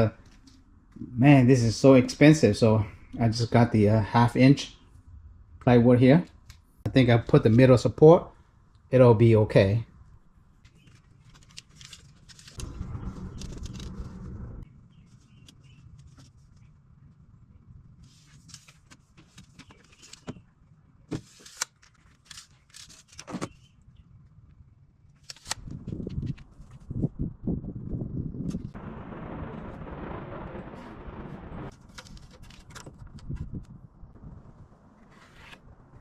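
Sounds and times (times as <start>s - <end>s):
brief rush of noise: 12.6s - 14.6s.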